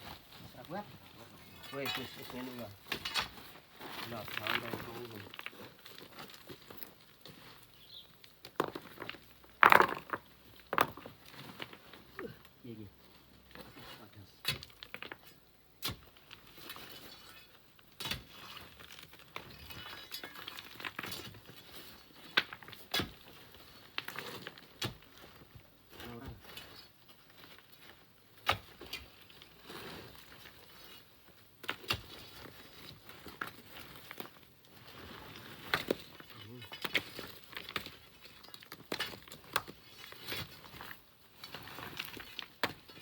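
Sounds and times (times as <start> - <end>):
pebbles clattering: 8.5 - 11.8.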